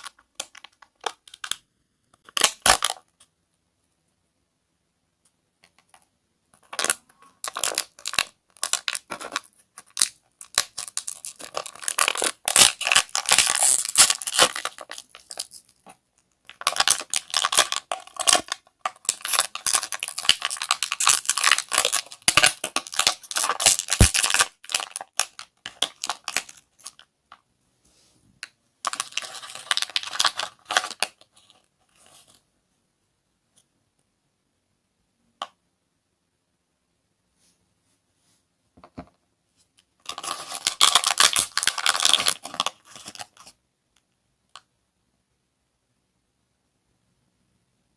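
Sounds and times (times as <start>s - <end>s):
crinkly material crackling: 6.6s - 27.4s, 39.7s - 43.6s.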